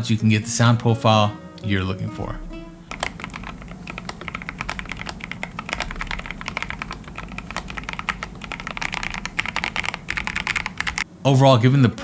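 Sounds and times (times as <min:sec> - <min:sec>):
mechanical keyboard key clacks: 0:02.9 - 0:11.0.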